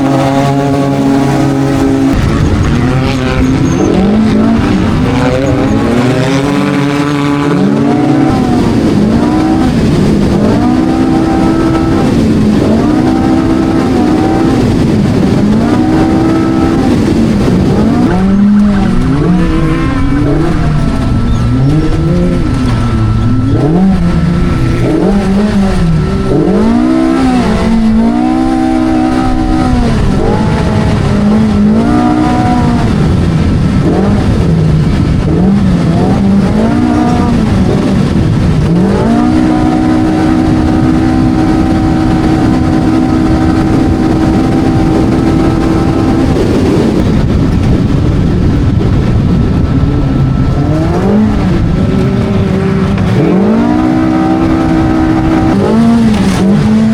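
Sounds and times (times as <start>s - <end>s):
engine revving loudly: 0.0s - 56.9s.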